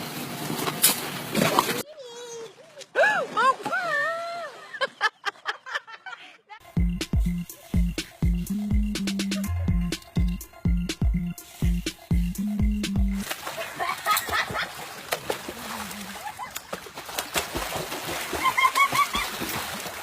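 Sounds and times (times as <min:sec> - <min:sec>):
music with steady drum beat: 0:06.6 - 0:13.2.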